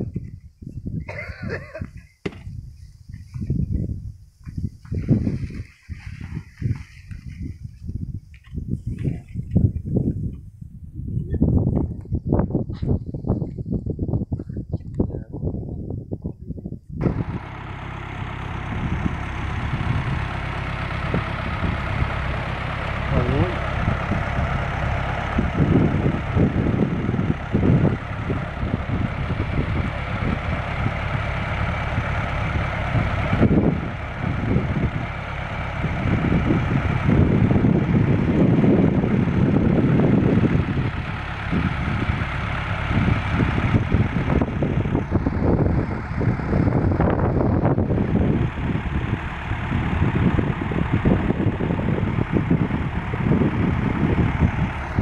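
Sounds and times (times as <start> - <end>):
truck engine revving: 17.0 - 55.0.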